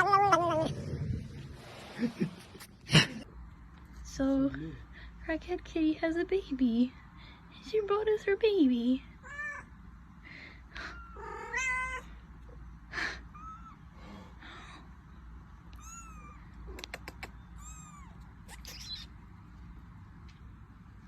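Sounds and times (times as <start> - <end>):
cat meowing: 9.2 - 9.7, 10.9 - 12.1, 15.7 - 16.5, 17.5 - 19.1
kitten mewing: 10.8 - 12.1, 15.8 - 19.2.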